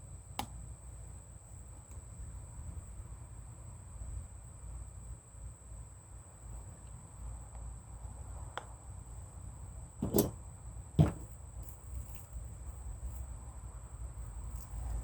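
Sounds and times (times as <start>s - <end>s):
knocks: 10.0s - 10.4s, 11.0s - 11.4s.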